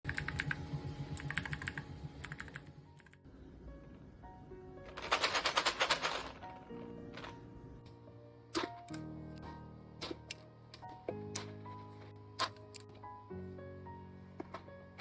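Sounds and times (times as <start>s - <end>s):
mechanical keyboard typing: 0.0s - 0.6s, 1.2s - 3.2s, 4.9s - 7.3s
background music: 0.0s - 15.0s.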